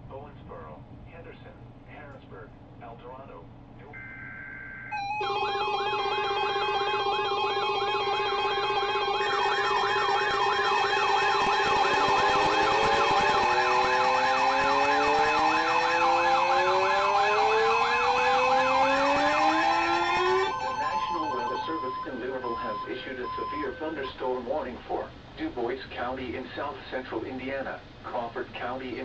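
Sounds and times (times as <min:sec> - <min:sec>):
alarm tones with warble: 0:03.9 - 0:24.5
rising siren wails: 0:04.0 - 0:24.1.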